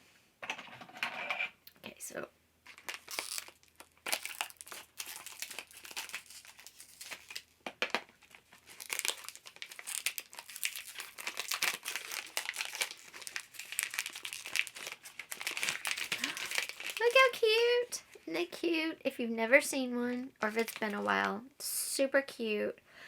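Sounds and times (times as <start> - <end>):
packaging crinkling and tearing: 2.7 - 17.7, 20.3 - 21.3.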